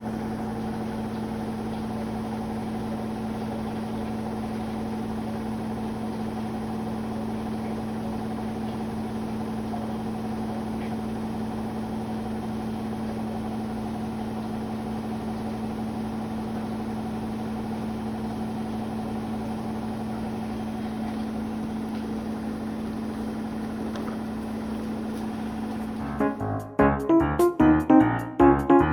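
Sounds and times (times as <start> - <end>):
washing machine spinning: 0.0 - 26.5
piano music: 26.0 - 28.9.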